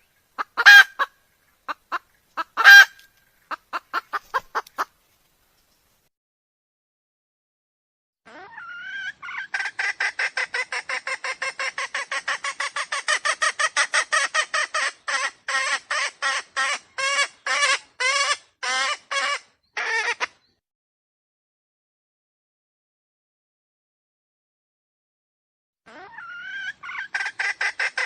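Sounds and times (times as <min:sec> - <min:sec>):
junglefowl calling: 0:00.0 - 0:05.0, 0:08.3 - 0:20.4, 0:25.9 - 0:28.0.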